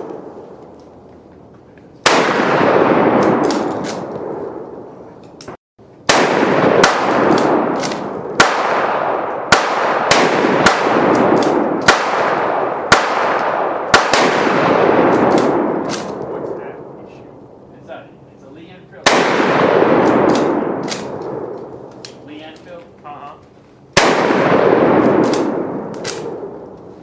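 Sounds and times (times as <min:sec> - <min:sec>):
echoing gunshots: 0:00.0 - 0:00.6, 0:02.0 - 0:04.9, 0:06.0 - 0:17.6, 0:19.0 - 0:22.0, 0:23.9 - 0:26.9.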